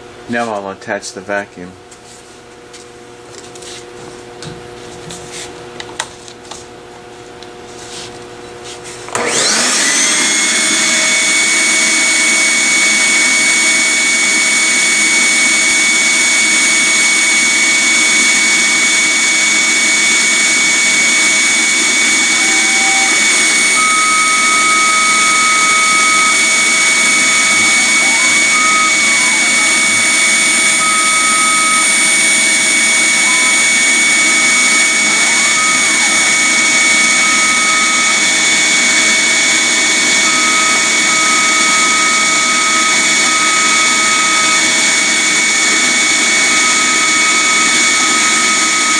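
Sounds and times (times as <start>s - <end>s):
vacuum cleaner whining: 7.9s - 48.9s
faint high tone: 33.2s - 33.8s.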